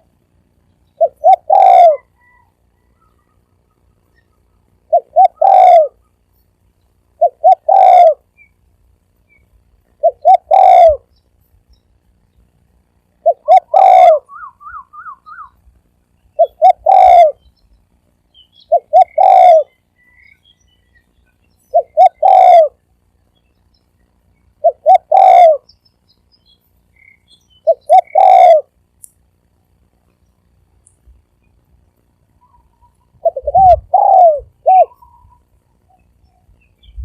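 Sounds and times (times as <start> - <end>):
wavering bird trill: 0.8 - 6.2, 7.1 - 11.9, 13.2 - 15.6, 16.2 - 28.8, 32.3 - 37.0
dove cooing: 0.9 - 6.2, 7.1 - 8.5, 9.9 - 11.1, 13.2 - 15.6, 16.4 - 17.5, 18.6 - 20.4, 21.7 - 22.9, 24.6 - 25.8, 27.0 - 28.8, 32.3 - 37.0.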